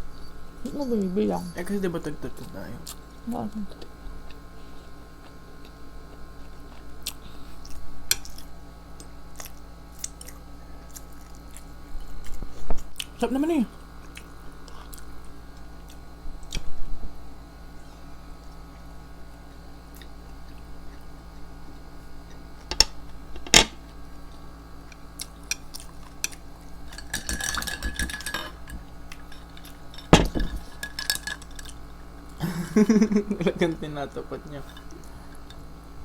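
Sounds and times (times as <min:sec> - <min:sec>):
utensils clinking against dishes: 0:25.5 - 0:31.8.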